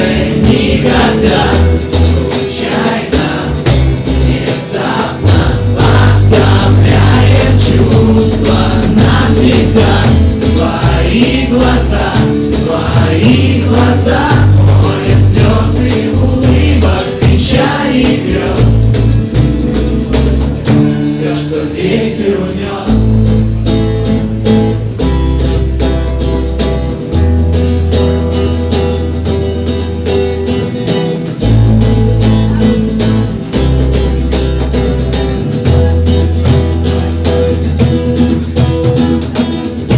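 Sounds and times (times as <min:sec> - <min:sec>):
deep bass line: 0:00.0 - 0:21.1, 0:22.9 - 0:39.9
instrumental backing: 0:00.0 - 0:21.3, 0:22.8 - 0:39.9
wordless choir-like singing: 0:00.0 - 0:23.3.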